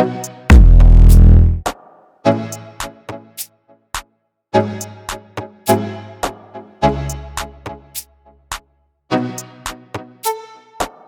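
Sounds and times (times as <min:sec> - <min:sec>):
instrumental music with sharp beat: 0:00.5 - 0:01.6.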